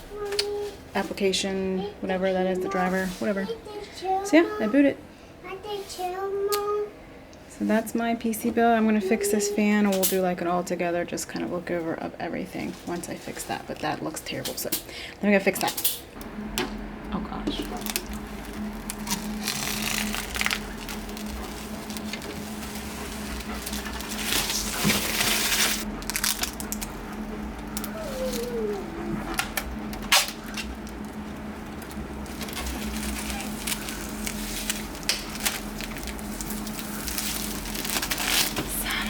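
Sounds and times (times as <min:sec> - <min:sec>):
steady low hum: 0:06.3 - 0:39.0
clicks and crackles of plastic parts: 0:17.5 - 0:28.5, 0:29.3 - 0:38.8.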